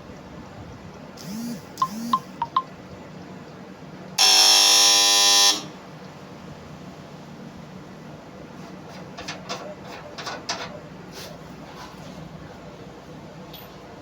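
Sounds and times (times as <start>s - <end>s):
loud harsh buzz: 1.2s - 2.4s, 4.2s - 5.8s
soft chirps: 1.8s - 2.7s.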